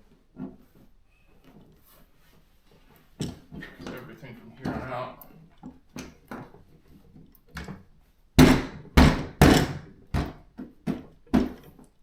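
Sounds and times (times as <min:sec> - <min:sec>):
loud thuds and knocks: 0:08.4 - 0:11.6.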